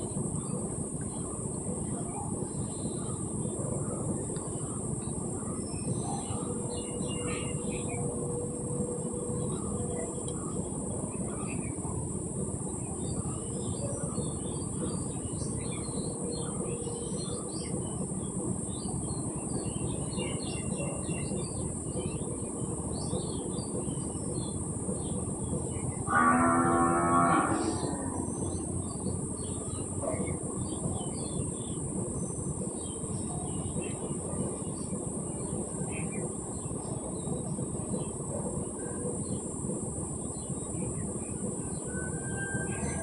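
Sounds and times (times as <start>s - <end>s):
low-pitched animal call: 26.0s - 28.6s.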